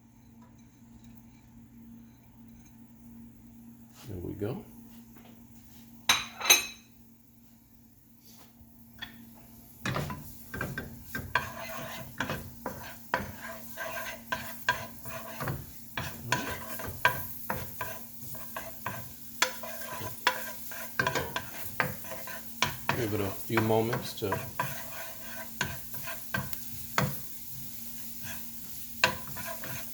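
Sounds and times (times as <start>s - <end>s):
garlic sizzling in oil: 9.5s - 29.9s
utensil scraping a pan: 9.9s - 29.9s.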